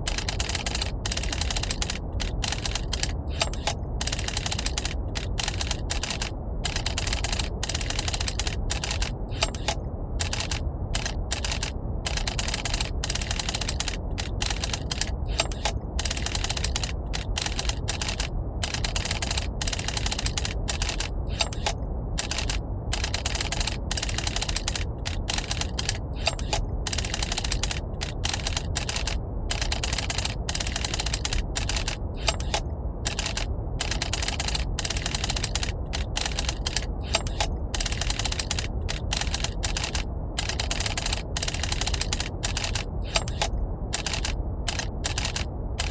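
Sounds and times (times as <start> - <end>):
low rumble of brown noise: 0.0 - 45.9
typewriter keys clacking: 0.1 - 45.9.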